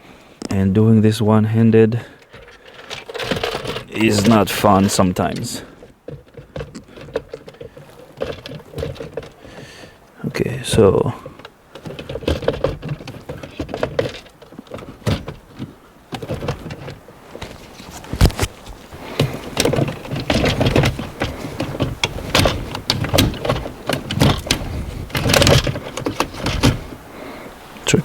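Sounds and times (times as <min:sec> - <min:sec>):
plastic parts clicking and rattling: 0:02.2 - 0:10.1, 0:10.7 - 0:27.0.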